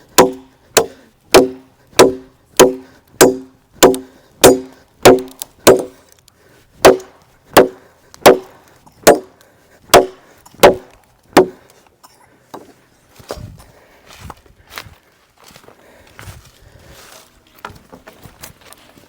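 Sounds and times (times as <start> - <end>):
machete chopping wood: 0.1 - 6.0, 6.8 - 9.3, 9.9 - 11.6.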